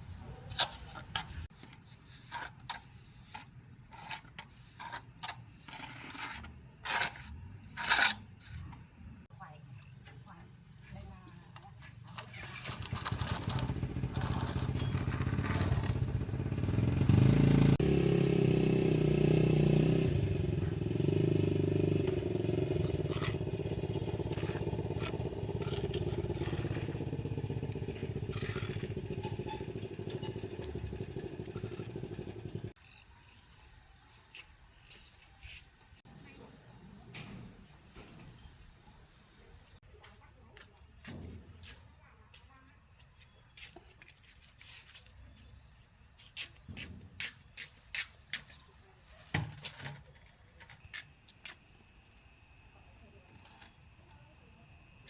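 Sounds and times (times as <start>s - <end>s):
small engine running: 12.2s - 32.8s.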